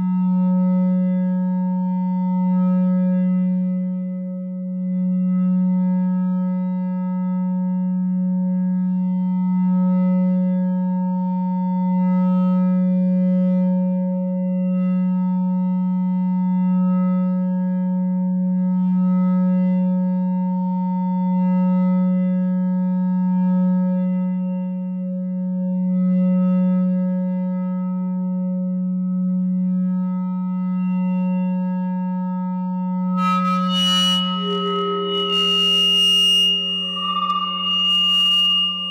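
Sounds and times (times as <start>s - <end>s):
mixer feedback drone: 29.6s - 38.9s.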